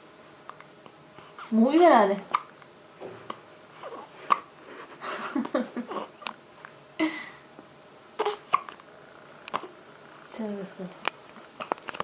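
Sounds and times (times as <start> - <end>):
child hiccupping: 8.2 - 8.8.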